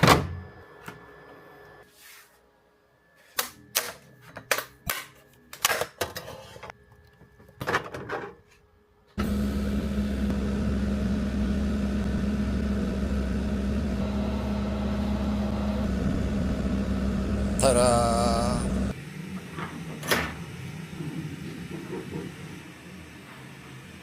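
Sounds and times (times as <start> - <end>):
machine humming: 9.2 - 19.4.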